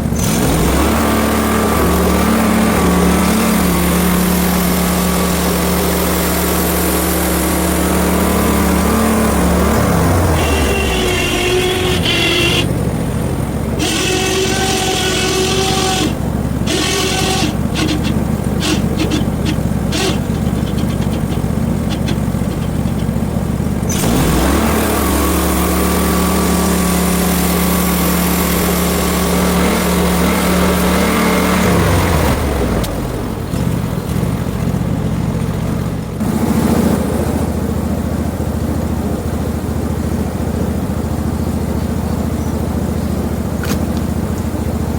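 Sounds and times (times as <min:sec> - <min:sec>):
sawmill gas engine running: 0:00.0 - 0:44.9
high whine: 0:01.6 - 0:30.9
clicks: 0:15.0 - 0:23.2.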